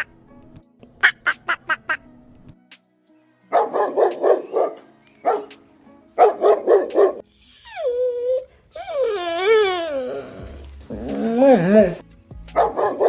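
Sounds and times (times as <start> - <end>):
dog barking: 3.5 - 5.5, 6.2 - 7.2, 12.6 - 13.0
dog whining: 6.2 - 12.0.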